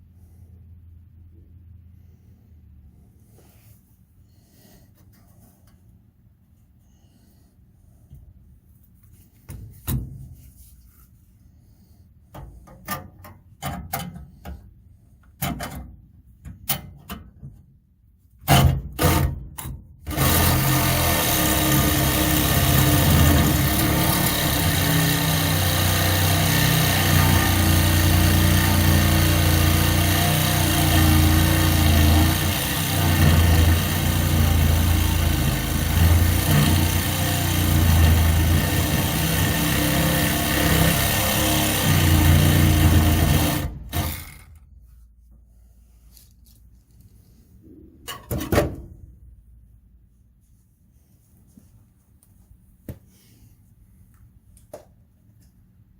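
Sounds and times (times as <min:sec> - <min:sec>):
metal taps and clanks: 0:12.3 - 0:14.6
loud power tool running: 0:20.1 - 0:44.5.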